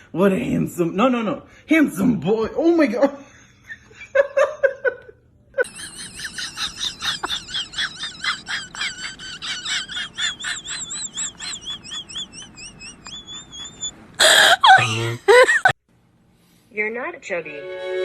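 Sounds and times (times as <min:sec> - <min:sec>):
animal chirping rapidly: 0:10.2 - 0:13.9.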